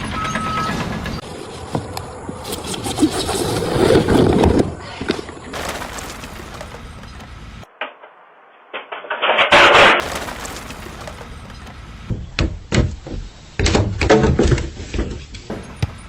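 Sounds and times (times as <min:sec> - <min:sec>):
loud crash: 0:08.7 - 0:11.7.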